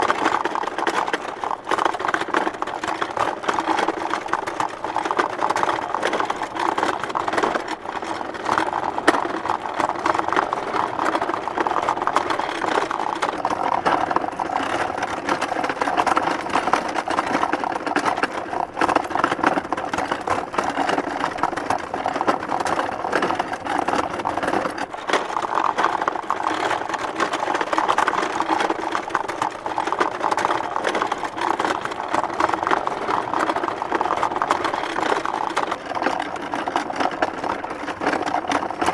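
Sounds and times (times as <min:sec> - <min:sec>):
cart banging over bumps: 0:00.0 - 0:38.9
wooden cart rattling: 0:00.0 - 0:38.9.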